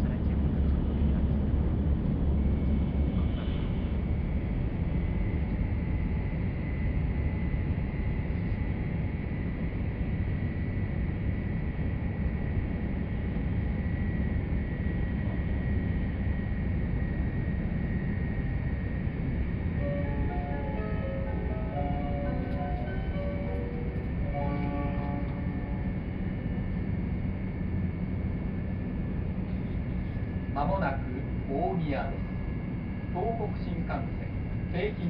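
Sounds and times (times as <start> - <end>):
faint high whine: 16.9 - 35.0
train cabin rumble: 19.2 - 35.0
onboard chime: 19.8 - 25.6.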